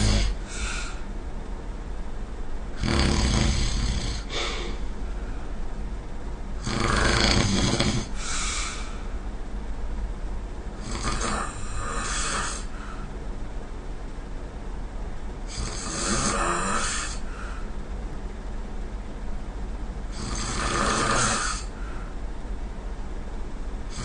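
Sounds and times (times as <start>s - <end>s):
person snoring: 0.0s - 1.0s, 2.8s - 4.8s, 6.6s - 9.1s, 10.8s - 13.1s, 15.5s - 17.6s, 20.1s - 21.8s
quiet breathing: 0.0s - 1.2s, 4.1s - 5.6s, 8.0s - 9.3s, 11.5s - 13.2s, 15.5s - 17.8s, 21.4s - 22.3s.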